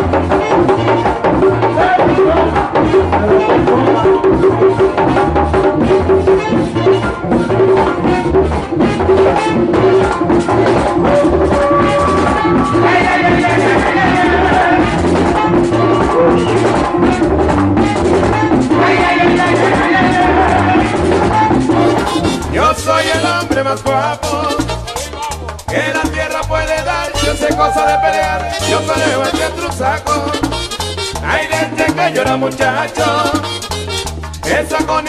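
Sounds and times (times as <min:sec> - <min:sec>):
live latin band playing: 0:00.0 - 0:35.0
steady drum beat: 0:00.0 - 0:35.0
maracas shaking: 0:21.7 - 0:35.0.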